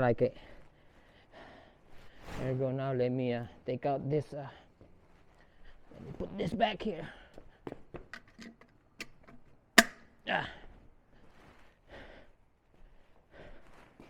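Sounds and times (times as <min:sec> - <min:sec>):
man breathing: 0:00.4 - 0:02.3, 0:04.6 - 0:05.9, 0:10.3 - 0:14.0
tools clicking and clattering: 0:08.0 - 0:10.2
sharp knock: 0:09.8 - 0:10.1.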